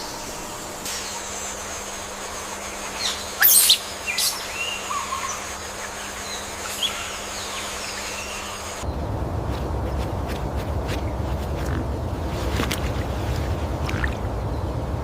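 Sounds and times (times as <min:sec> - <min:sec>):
birds chirping: 0:00.0 - 0:09.2
faint steady hum: 0:00.0 - 0:15.0
whistled bird calls: 0:00.9 - 0:08.8.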